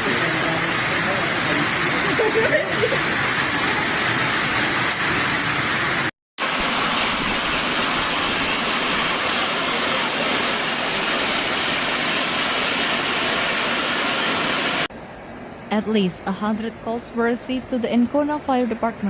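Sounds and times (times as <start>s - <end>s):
heavy rain pouring: 0.0s - 14.9s.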